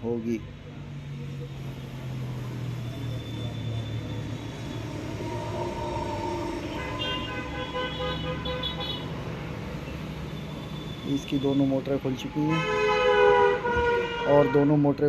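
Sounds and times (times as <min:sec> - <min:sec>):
passing vehicle rumble: 0:00.0 - 0:12.4
horn-like tone: 0:03.1 - 0:09.1.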